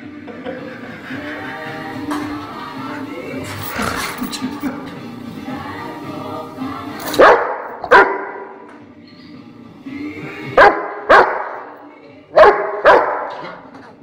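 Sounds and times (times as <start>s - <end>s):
dog barking: 7.2s - 8.5s, 10.6s - 11.7s, 12.4s - 13.6s.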